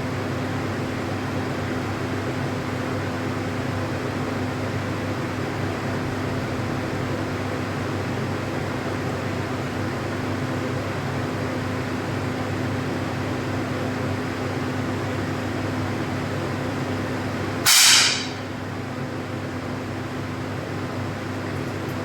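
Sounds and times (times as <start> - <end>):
fan humming: 15.5 - 19.1
air pistol shot: 17.7 - 18.5.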